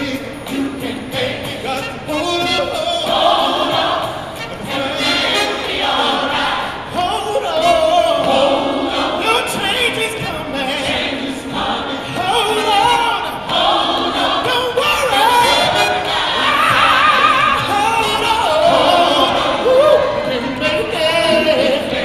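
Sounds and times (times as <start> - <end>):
gospel choir singing: 0.0 - 22.0.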